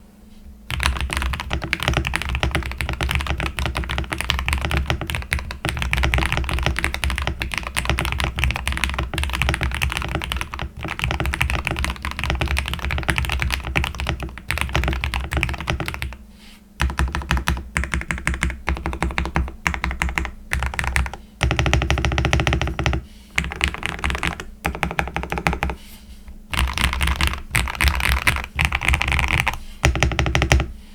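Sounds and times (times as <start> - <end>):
fast typing on mechanical keyboard: 0.7 - 16.2, 16.8 - 25.8, 26.4 - 30.7.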